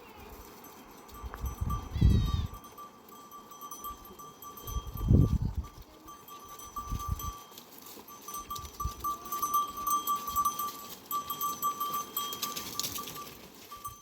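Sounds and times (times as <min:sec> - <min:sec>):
goat bells tinkling: 0:00.0 - 0:14.0.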